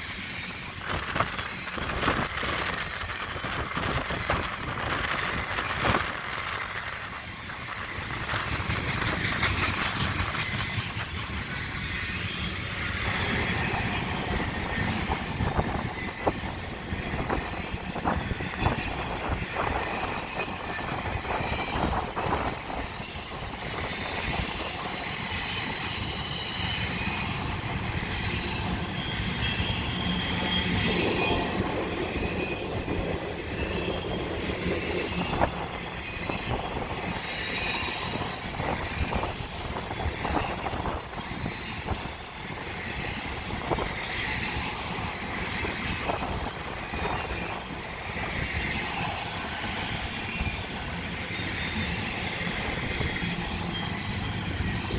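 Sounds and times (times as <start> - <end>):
train wheels rumbling on rail: 0.0 - 54.9
clacks over rail joints: 0.1 - 39.4
high wheel squeal: 28.7 - 41.9, 48.9 - 54.9.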